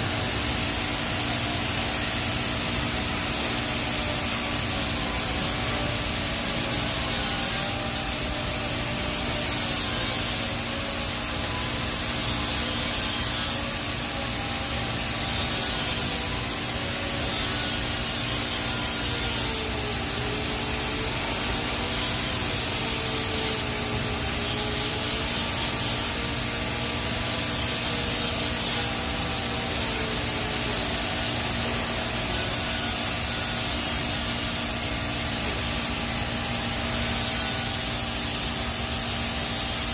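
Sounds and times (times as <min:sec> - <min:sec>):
welding arc hissing: 0:00.0 - 0:39.9.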